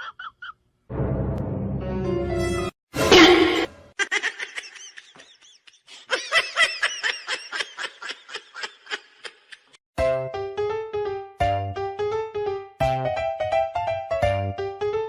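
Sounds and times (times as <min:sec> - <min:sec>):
keyboard music: 0:10.0 - 0:15.0.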